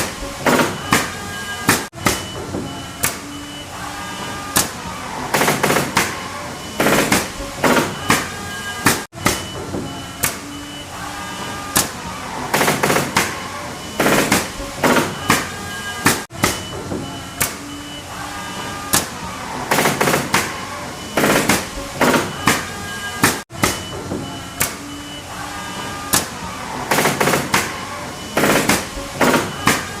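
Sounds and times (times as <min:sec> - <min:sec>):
nail gun firing into wood: 0:05.3 - 0:06.2, 0:06.8 - 0:09.5, 0:12.5 - 0:13.4, 0:14.0 - 0:16.6, 0:19.7 - 0:20.6, 0:21.2 - 0:22.6, 0:26.9 - 0:27.8, 0:28.4 - 0:29.9.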